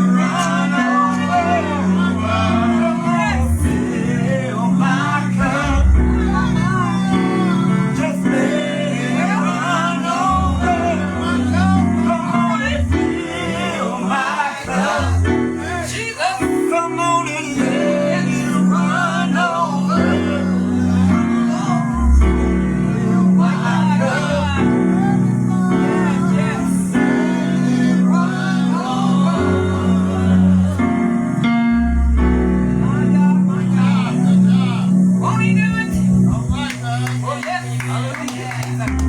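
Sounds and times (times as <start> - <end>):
man singing gospel: 0.0 - 31.4, 32.6 - 38.9
bass and guitar accompaniment: 28.6 - 39.0.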